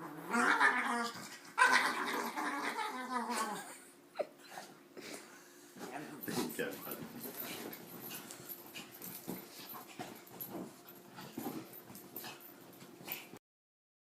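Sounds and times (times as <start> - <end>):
dog whining and grunting: 0.0 - 5.2.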